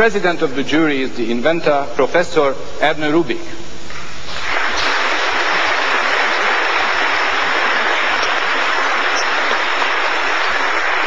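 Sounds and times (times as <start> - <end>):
audience applauding: 4.3 - 11.0.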